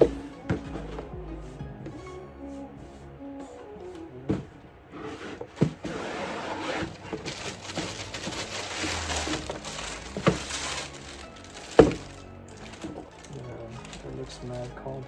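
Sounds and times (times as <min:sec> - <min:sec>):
paper crackling and rustling: 0:05.5 - 0:15.0.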